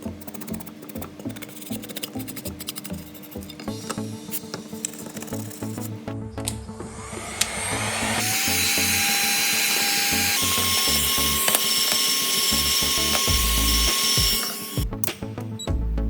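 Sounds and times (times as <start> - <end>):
music: 0.0 - 16.0
power tool whining: 6.8 - 14.9.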